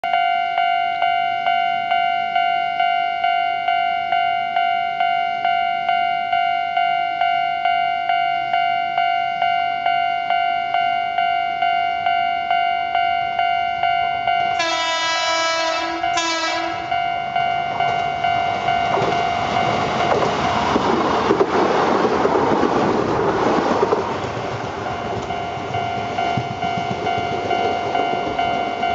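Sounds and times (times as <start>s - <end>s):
crossing bell ringing: 0.0s - 20.6s, 24.8s - 28.9s
train horn blasts: 14.4s - 17.1s.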